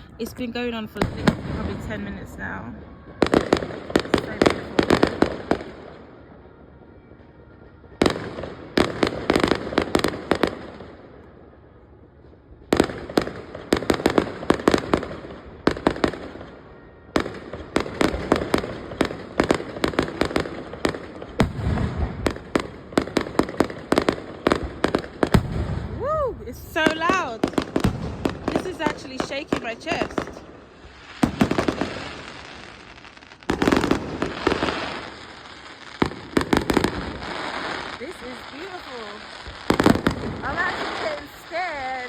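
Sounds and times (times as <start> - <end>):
fireworks bangs and crackles: 0.0 - 42.0.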